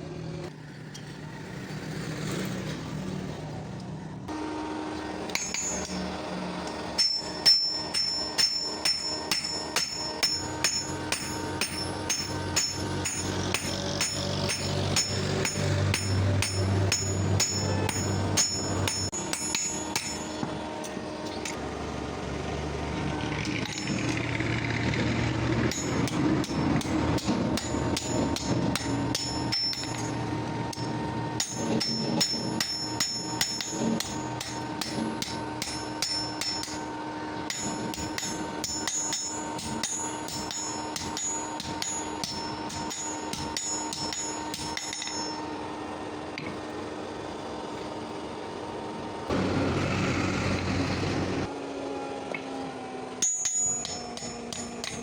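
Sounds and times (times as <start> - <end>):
hammer striking steel on anvil: 5.2 - 21.6, 23.4 - 24.2, 25.6 - 45.6, 53.2 - 55.0.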